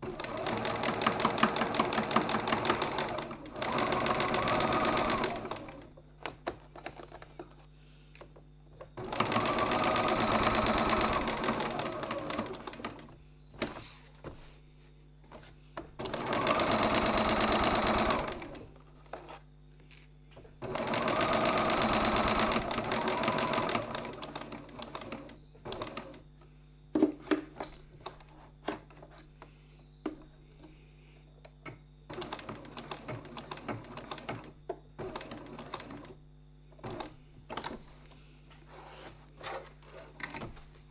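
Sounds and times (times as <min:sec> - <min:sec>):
sewing machine stitching: 0:00.0 - 0:05.9, 0:09.0 - 0:13.1, 0:16.0 - 0:18.7, 0:20.6 - 0:26.2, 0:32.1 - 0:36.2.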